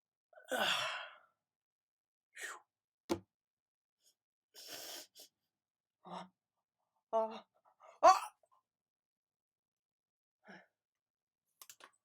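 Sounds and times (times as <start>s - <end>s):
person sighing and gasping: 0.5s - 1.2s.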